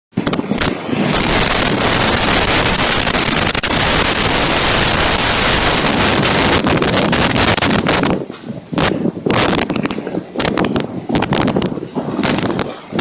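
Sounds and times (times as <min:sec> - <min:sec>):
storm wind on microphone: 0:00.1 - 0:13.0.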